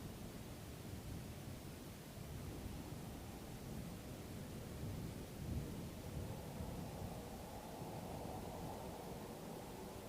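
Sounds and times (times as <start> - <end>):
wind blowing: 4.4 - 10.0.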